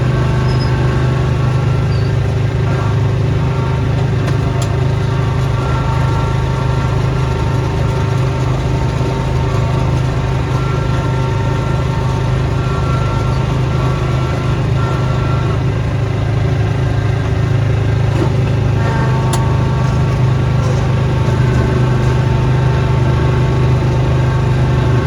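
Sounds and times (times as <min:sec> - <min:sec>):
faint high whine: 0:00.0 - 0:15.8
small gasoline engine running: 0:00.0 - 0:25.0.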